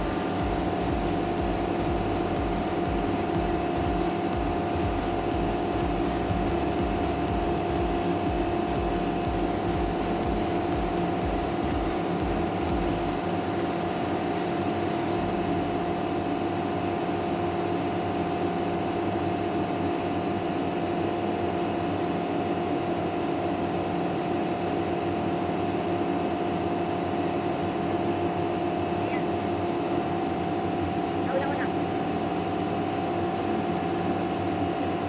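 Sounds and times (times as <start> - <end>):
steady whine: 0.0 - 16.9, 28.6 - 35.0
generator humming: 0.0 - 17.4, 27.2 - 35.0.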